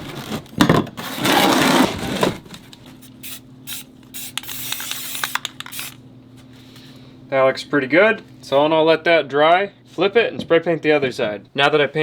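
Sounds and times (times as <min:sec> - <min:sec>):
spray paint can hissing: 0:03.2 - 0:06.0.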